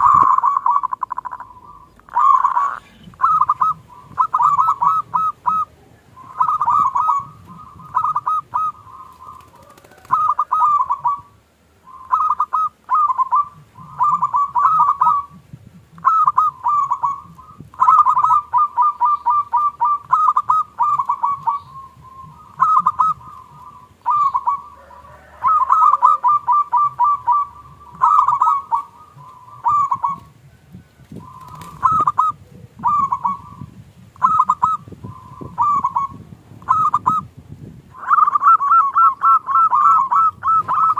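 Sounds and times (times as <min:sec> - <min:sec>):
dove cooing: 0:00.0 - 0:40.9.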